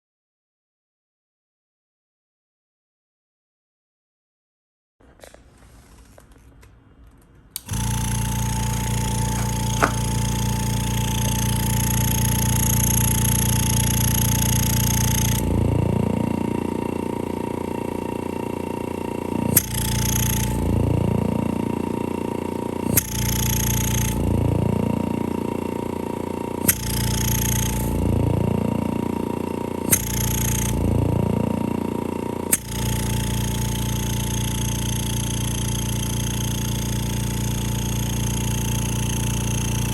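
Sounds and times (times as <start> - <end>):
vacuum pump motor hum: 7.6 - 39.9
sharp click: 8.7 - 10.5.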